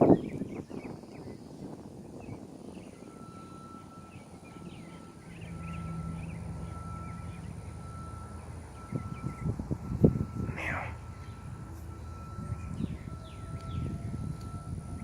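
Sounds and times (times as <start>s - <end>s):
low engine hum: 0.0s - 15.0s
small birds chirping: 2.2s - 14.2s
faint high tone: 10.4s - 14.6s.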